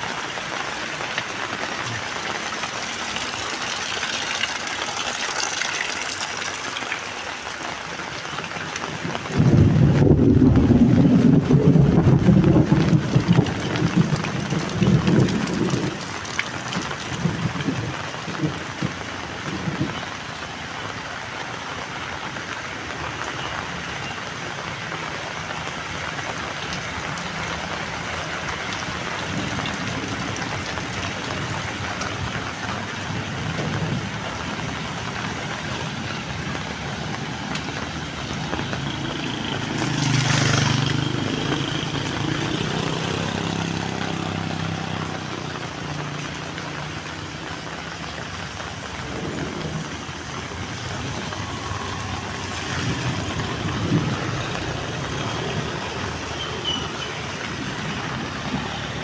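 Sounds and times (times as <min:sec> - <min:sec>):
heavy rain falling: 0:00.0 - 0:59.0
vehicle engine passing: 0:37.2 - 0:46.9.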